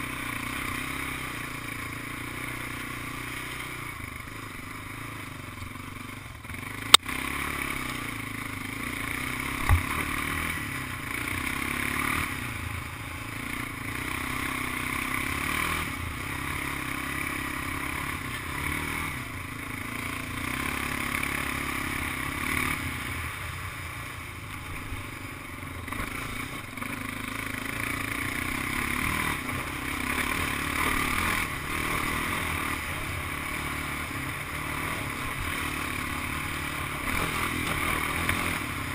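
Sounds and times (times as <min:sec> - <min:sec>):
atv engine running: 0:00.0 - 0:38.9
thump: 0:09.6 - 0:09.9.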